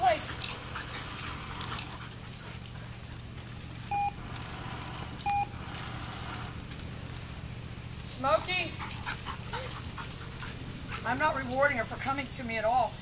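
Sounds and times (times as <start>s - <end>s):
steady low hum: 0.0s - 13.0s
short electronic beeps: 3.9s - 4.2s, 5.2s - 5.5s.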